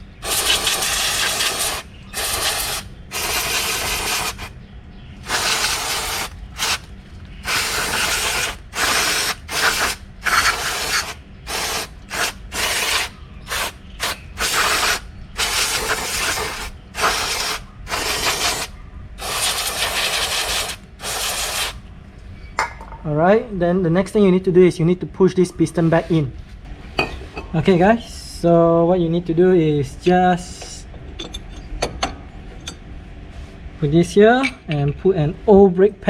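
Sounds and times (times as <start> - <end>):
aerosol can spraying: 0.2 - 4.5, 5.3 - 21.8.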